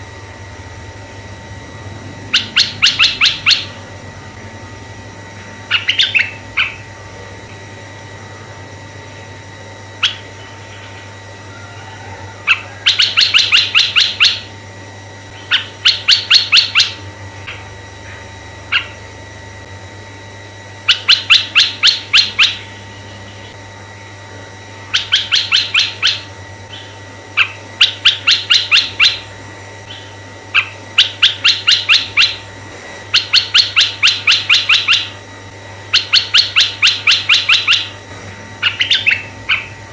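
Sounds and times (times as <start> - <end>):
bird song rapid sharp notes: 2.2 - 3.8, 5.6 - 6.9, 10.0 - 11.1, 12.5 - 14.5, 15.3 - 17.7, 18.6 - 19.0, 20.9 - 23.6, 24.9 - 29.3, 29.9 - 32.4, 33.1 - 35.2, 35.9 - 38.0, 38.6 - 39.9.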